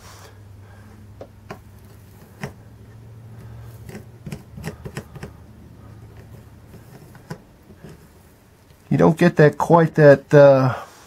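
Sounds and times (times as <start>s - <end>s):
steady low hum: 0.0s - 10.8s
light soldering clicks and taps: 1.2s - 2.6s.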